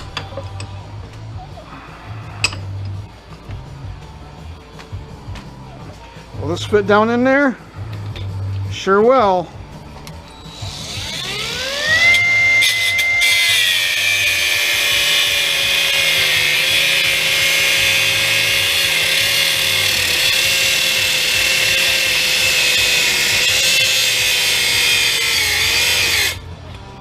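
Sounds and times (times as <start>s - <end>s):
electric drill motor whine: 10.4s - 26.4s.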